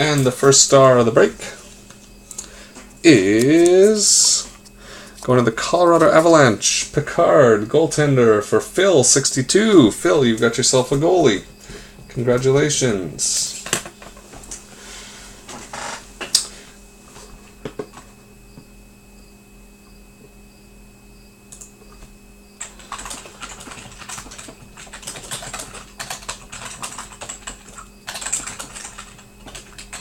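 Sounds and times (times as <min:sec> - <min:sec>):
typing on computer keyboard: 0:22.6 - 0:30.0.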